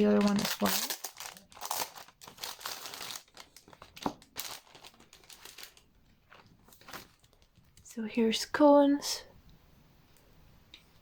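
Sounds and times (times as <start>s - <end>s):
packaging crinkling: 0.0s - 7.7s.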